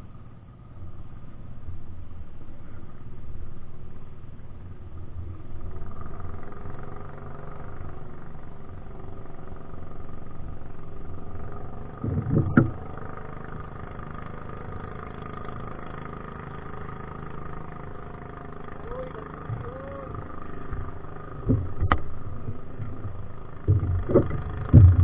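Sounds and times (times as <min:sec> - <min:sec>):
engine running: 0:00.0 - 0:25.0
loud rumble: 0:18.9 - 0:25.0.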